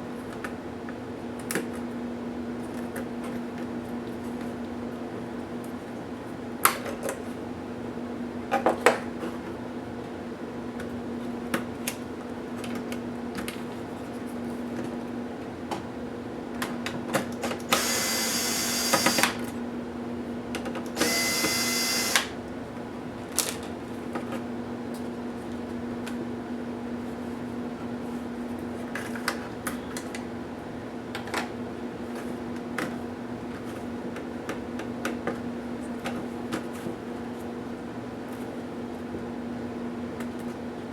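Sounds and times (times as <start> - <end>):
electric screwdriver whining: 17.7 - 19.4, 21.0 - 22.4.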